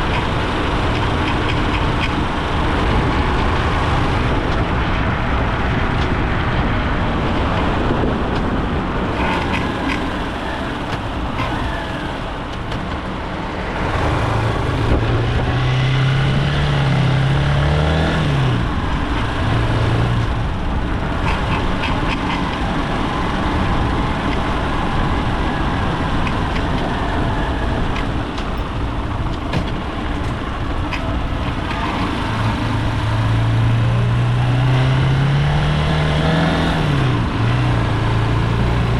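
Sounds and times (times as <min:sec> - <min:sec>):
motorcycle engine revving: 0:00.0 - 0:38.9
rasping noise from motorcycle: 0:08.4 - 0:16.0.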